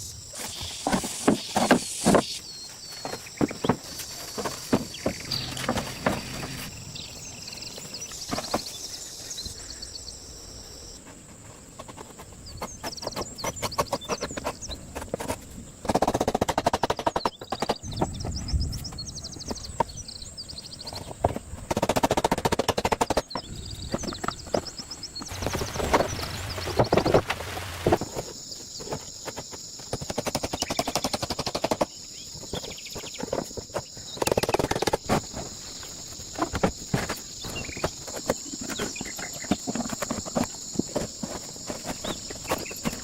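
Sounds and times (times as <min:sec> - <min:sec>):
birds chirping: 0:00.0 - 0:11.0, 0:11.7 - 0:15.8, 0:16.8 - 0:21.6, 0:22.7 - 0:43.0
rapid sharp tapping and knocking: 0:12.6 - 0:18.1, 0:21.0 - 0:24.7, 0:28.9 - 0:35.5.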